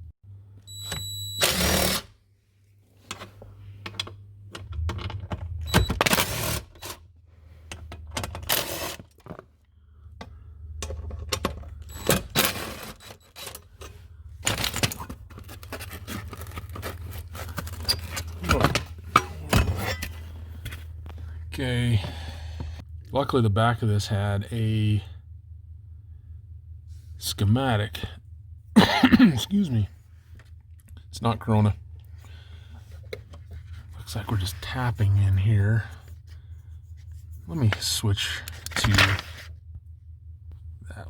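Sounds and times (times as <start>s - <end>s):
steady low hum: 0.0s - 41.0s
hand tools clicking and scraping: 7.7s - 9.3s, 10.8s - 20.9s.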